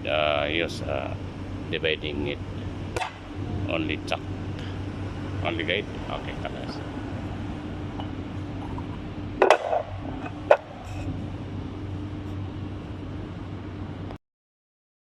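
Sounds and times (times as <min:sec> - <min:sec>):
milling machine motor humming: 0:00.0 - 0:14.2
sharp knocks: 0:03.0 - 0:03.3, 0:08.0 - 0:10.7.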